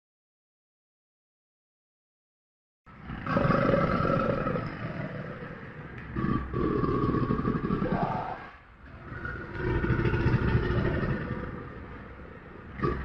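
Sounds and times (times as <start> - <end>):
crocodile deep rumbling growl: 2.9 - 13.0.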